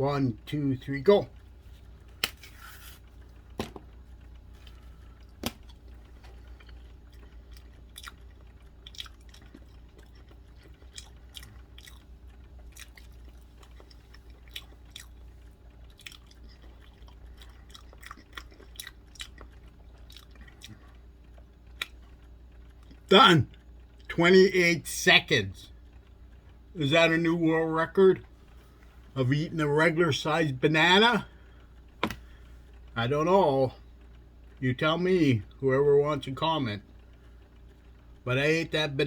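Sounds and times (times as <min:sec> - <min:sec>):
faint low hum: 0:00.0 - 0:39.0
person biting and chewing: 0:01.8 - 0:20.8.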